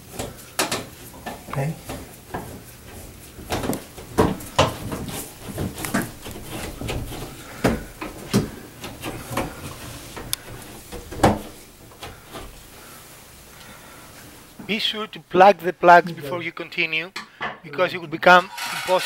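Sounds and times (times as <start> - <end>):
clicks and knocks of fan parts: 0.0 - 12.6.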